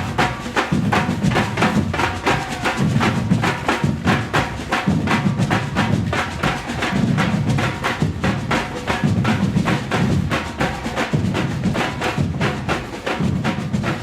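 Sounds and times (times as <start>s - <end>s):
drum ensemble playing: 0.0s - 14.0s.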